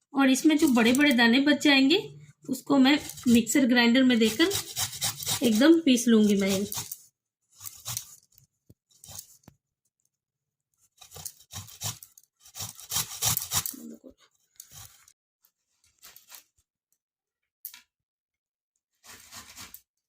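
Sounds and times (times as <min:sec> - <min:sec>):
fruit rasping on a hand grater: 0:03.0 - 0:03.4, 0:04.1 - 0:07.0, 0:07.6 - 0:08.2, 0:11.0 - 0:13.8.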